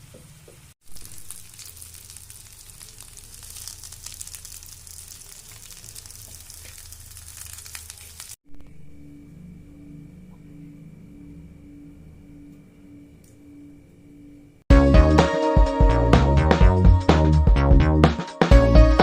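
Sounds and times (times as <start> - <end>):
food sizzling in hot oil: 0.0 - 8.4.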